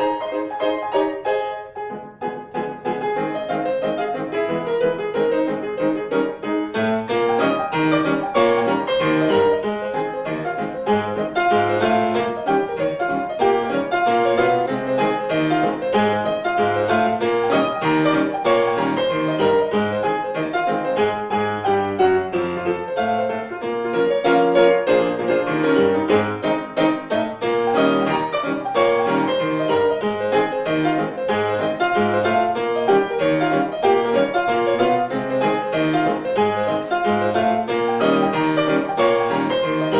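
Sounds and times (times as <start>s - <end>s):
piano music: 0.0s - 39.9s.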